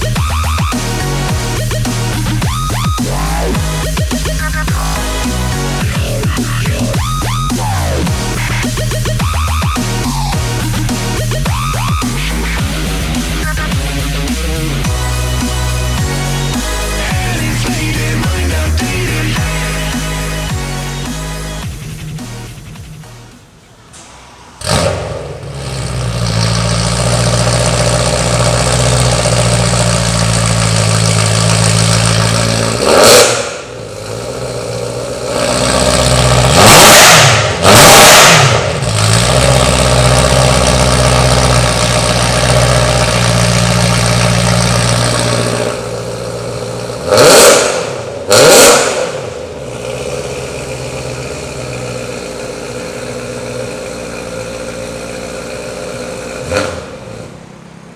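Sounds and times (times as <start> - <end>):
car engine idling and revving: 0.0 - 57.9.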